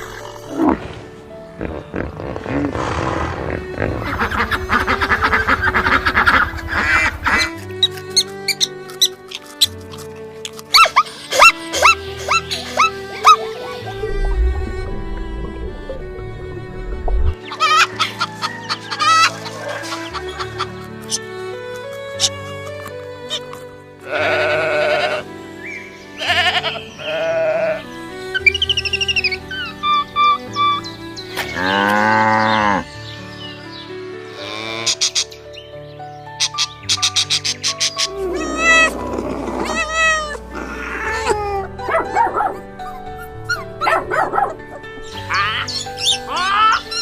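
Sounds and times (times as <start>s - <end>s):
background music: 0.0s - 47.0s
sheep bleating: 24.0s - 25.2s, 26.2s - 27.8s.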